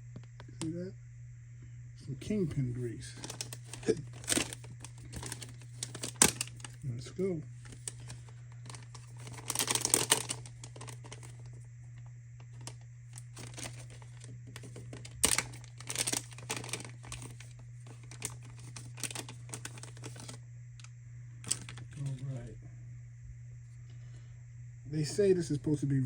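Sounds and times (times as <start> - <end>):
steady low hum: 0.0 - 26.0
plastic packaging crinkling and tearing: 3.0 - 6.8, 7.6 - 11.6, 12.4 - 20.4, 21.4 - 22.3.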